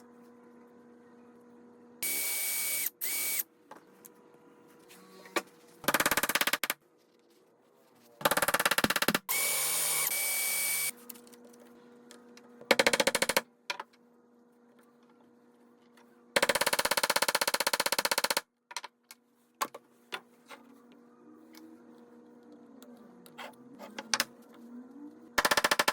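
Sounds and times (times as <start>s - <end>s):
drill whining: 2.0s - 3.4s, 9.3s - 10.9s.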